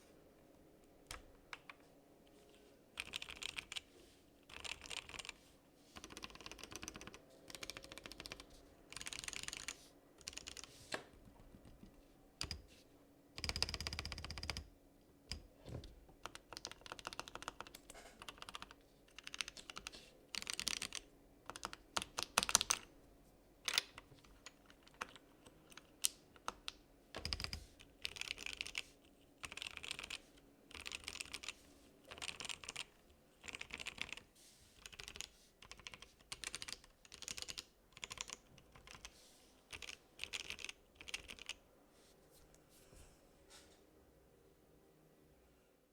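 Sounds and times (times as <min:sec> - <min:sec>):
mechanical keyboard typing: 0:03.0 - 0:03.9, 0:04.5 - 0:05.4, 0:06.0 - 0:10.7, 0:11.5 - 0:12.7, 0:13.4 - 0:14.7, 0:16.2 - 0:22.9, 0:23.6 - 0:34.2, 0:34.8 - 0:39.1, 0:39.7 - 0:41.6.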